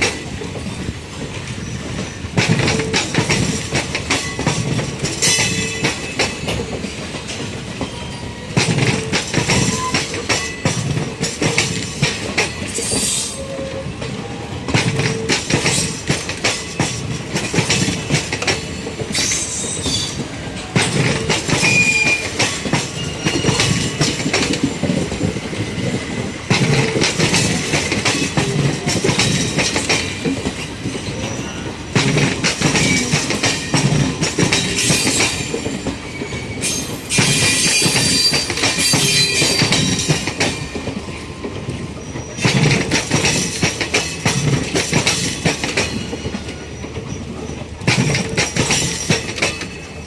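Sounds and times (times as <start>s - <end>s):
train wheels clattering over rail joints: 0.0s - 13.4s, 14.0s - 50.0s
high wheel squeals: 21.6s - 24.0s, 34.1s - 40.0s.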